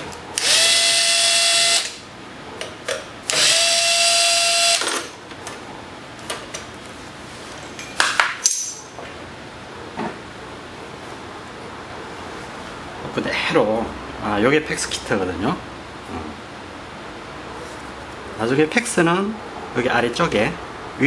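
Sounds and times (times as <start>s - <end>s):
cordless drill whining: 0.4s - 2.0s, 3.3s - 4.9s.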